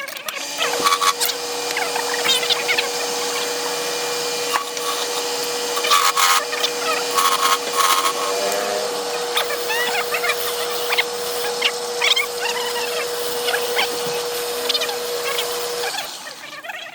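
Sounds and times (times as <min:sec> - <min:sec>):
turning tool cutting wood: 0:00.0 - 0:16.9
wood lathe humming: 0:00.4 - 0:16.6.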